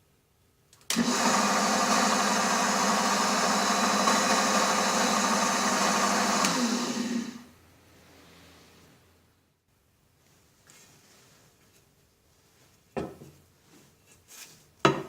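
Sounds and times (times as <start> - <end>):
machine tool motor running: 1.0 - 7.4.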